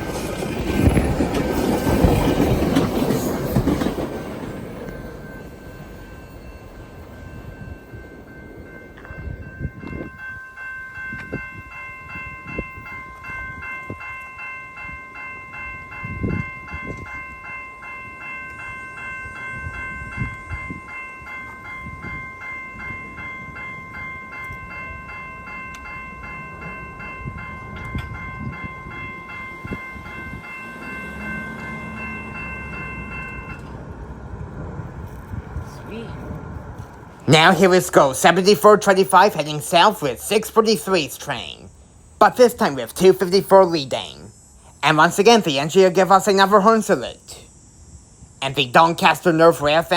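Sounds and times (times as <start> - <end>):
train wheels thumping: 0.0 - 6.1
level-crossing warning bells: 0.0 - 49.9
train rumbling on rails: 0.0 - 49.9.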